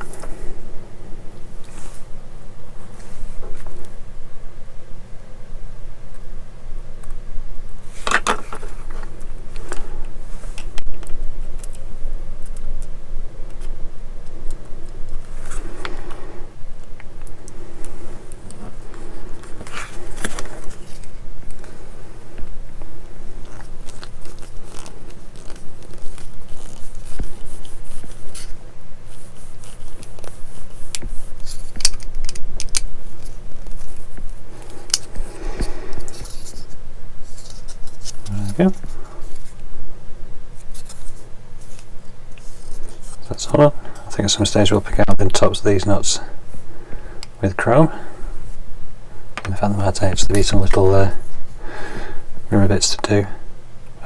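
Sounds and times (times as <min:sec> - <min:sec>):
plastic pieces clicking and scraping: 0:29.8 - 0:35.1.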